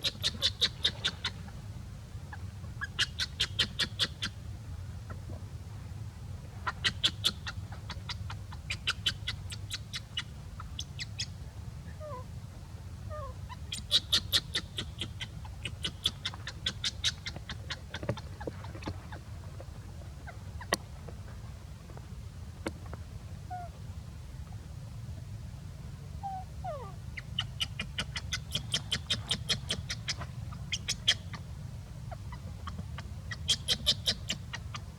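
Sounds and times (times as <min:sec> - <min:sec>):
animal chirping: 0:26.3 - 0:31.4, 0:32.7 - 0:34.8.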